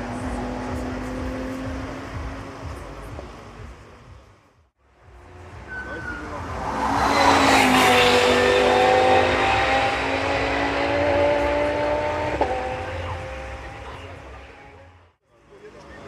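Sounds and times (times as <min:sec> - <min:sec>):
race car passing at speed: 0:05.0 - 0:14.8.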